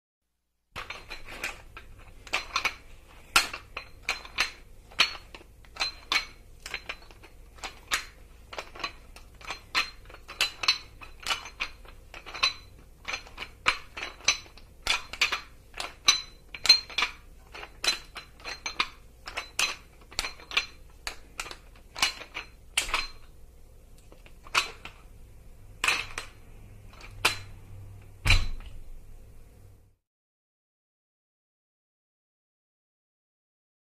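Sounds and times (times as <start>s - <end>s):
weight plates clinking: 0.8s - 23.3s, 25.8s - 27.6s
heavy thud: 28.2s - 28.7s.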